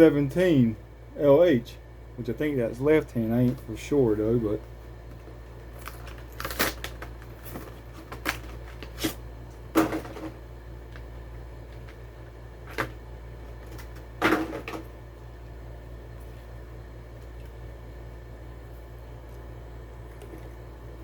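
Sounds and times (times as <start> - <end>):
packaging clicks and crinkles: 5.7 - 9.2.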